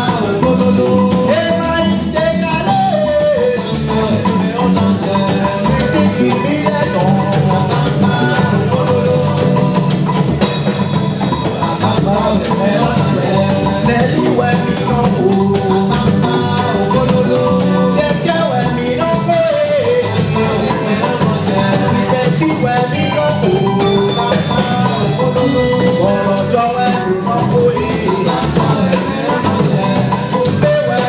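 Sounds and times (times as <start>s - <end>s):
bass: 0.0s - 31.0s
driving drum beat: 0.0s - 31.0s
person singing: 0.0s - 31.0s.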